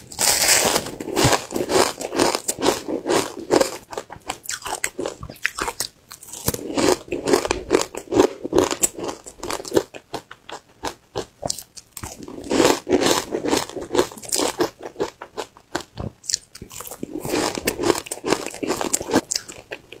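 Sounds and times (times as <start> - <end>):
crunching ice chewing: 16.3 - 19.8.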